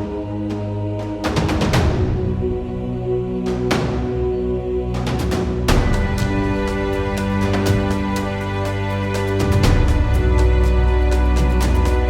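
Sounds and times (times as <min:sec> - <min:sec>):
dramatic orchestral music: 0:00.0 - 0:12.0.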